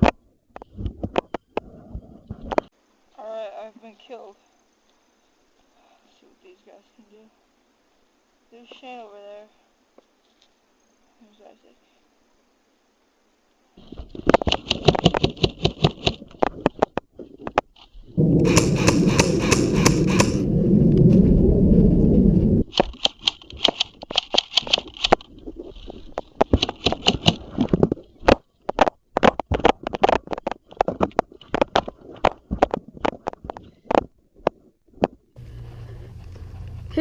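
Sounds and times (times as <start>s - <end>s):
airsoft guns firing: 18.2s - 20.4s
loud low rumble: 18.2s - 22.7s.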